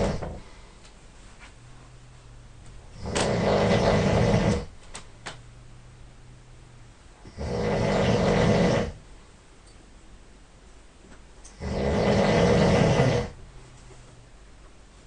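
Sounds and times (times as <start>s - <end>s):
person snoring loudly: 0.0s - 0.4s, 3.0s - 4.7s, 7.2s - 9.0s, 11.5s - 13.4s.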